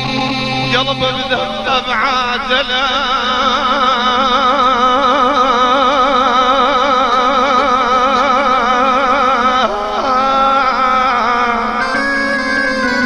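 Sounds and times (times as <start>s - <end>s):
man singing a long vibrato note: 0.0s - 13.0s
instrumental backing: 11.8s - 13.0s.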